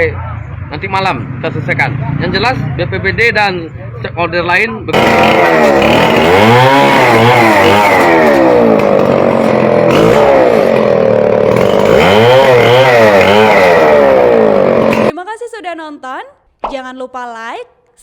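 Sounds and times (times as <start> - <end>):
chainsaw cutting wood: 4.9 - 15.1.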